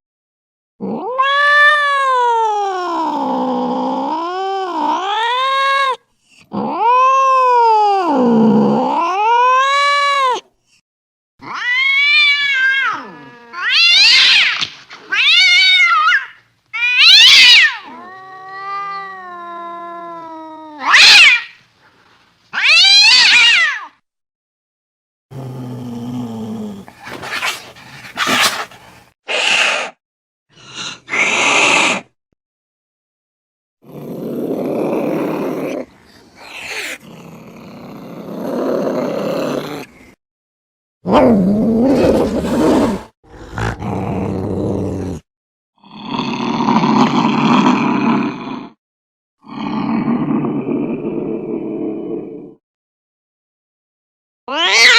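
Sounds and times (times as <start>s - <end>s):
cats meowing and caterwauling: 0.8s - 10.4s, 11.4s - 21.6s, 22.6s - 24.0s, 36.4s - 37.0s, 54.5s - 54.9s.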